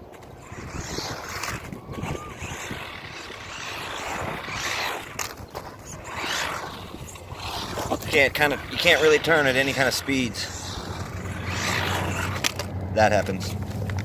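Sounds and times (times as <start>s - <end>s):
electric motor and gears whirring: 0.0s - 14.0s
tyre noise on asphalt: 0.0s - 14.0s.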